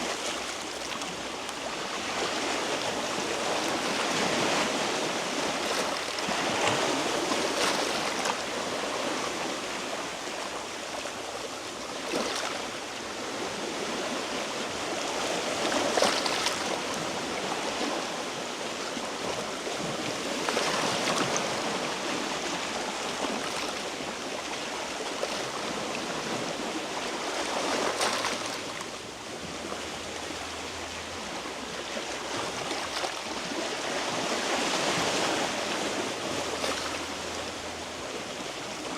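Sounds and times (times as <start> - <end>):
waves splashing against rocks: 12.0 - 38.9.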